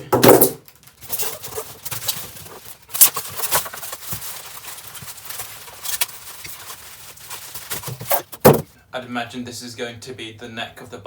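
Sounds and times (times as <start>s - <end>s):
parts knocking and clattering: 0.0s - 5.1s, 7.6s - 8.7s
packaging rustling: 0.6s - 8.7s.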